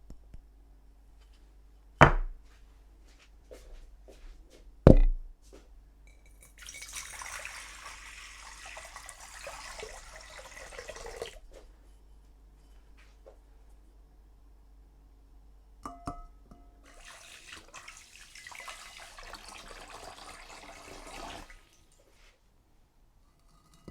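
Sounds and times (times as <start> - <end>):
sharp knocks: 2.0 - 2.4, 4.9 - 5.3
water running: 6.5 - 11.6, 16.8 - 22.2.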